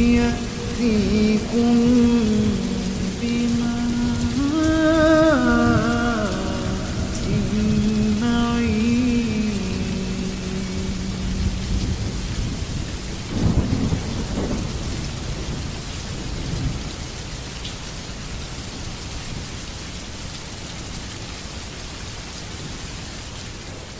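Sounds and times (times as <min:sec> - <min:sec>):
thunder rumble: 0:00.0 - 0:17.0
steady rain: 0:00.0 - 0:23.9.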